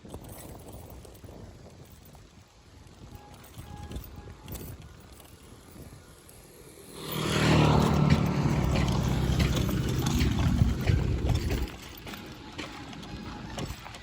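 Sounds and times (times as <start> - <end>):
vehicle engine running: 6.4 - 14.0.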